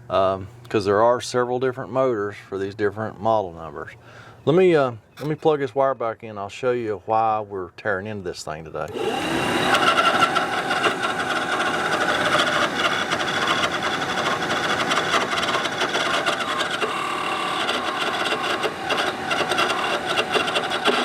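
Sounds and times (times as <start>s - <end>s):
blower fan motor rattling: 8.8s - 21.0s.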